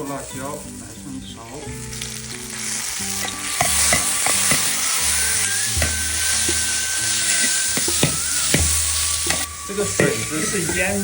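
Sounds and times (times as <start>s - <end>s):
garlic sizzling in oil: 0.0s - 11.0s
spatula knocking and scraping pan: 3.2s - 5.0s, 5.8s - 11.0s.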